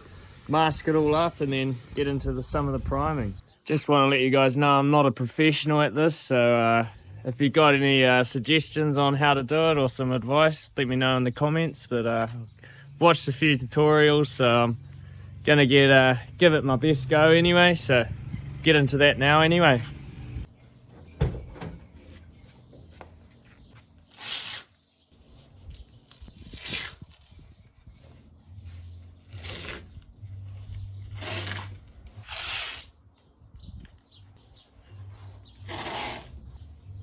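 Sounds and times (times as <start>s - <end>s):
masking tape tearing: 24.1s - 24.8s, 26.1s - 27.4s, 29.2s - 30.2s, 30.9s - 32.9s.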